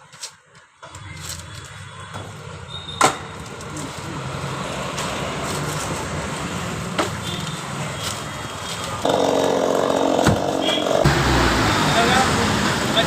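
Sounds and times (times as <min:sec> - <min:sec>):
chainsaw engine revving: 0:09.0 - 0:13.0.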